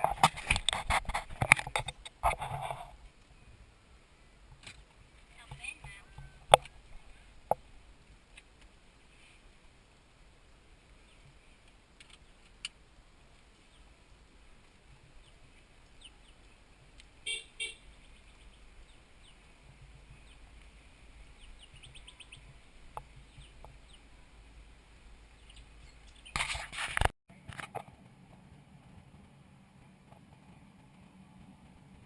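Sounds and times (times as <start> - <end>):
birds chirping faintly: 10.8 - 26.4.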